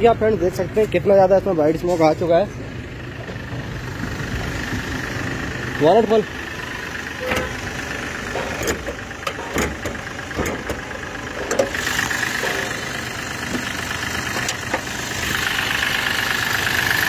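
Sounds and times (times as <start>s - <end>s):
diesel engine idling: 0.0s - 17.0s
sharp clicks and knocks: 7.2s - 15.0s.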